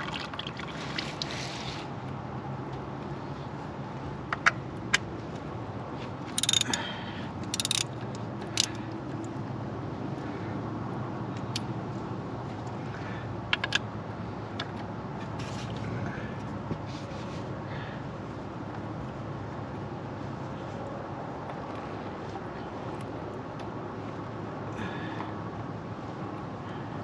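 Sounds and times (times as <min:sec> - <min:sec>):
metal hand tools clinking: 0:06.4 - 0:06.8.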